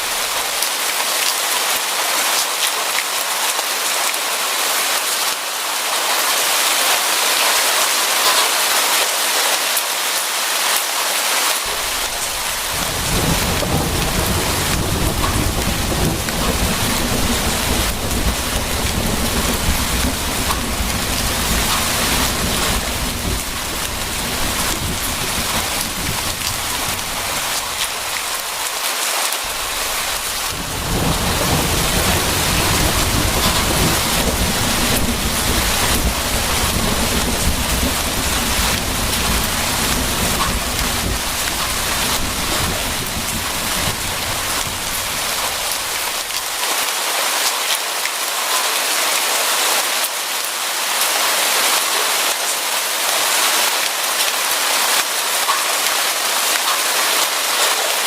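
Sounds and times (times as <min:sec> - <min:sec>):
heavy rain hissing: 0:00.0 - 0:02.4, 0:10.4 - 0:47.4
low rolling thunder: 0:11.7 - 0:28.6, 0:29.5 - 0:46.4.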